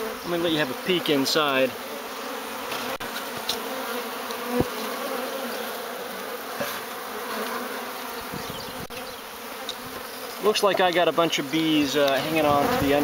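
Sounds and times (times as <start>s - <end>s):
honey bees buzzing: 0.0s - 13.0s.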